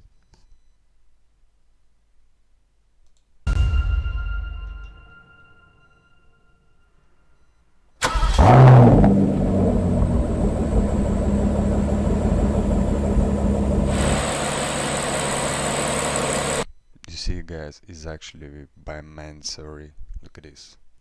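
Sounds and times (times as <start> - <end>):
car engine starting and idling: 8.0 - 16.6.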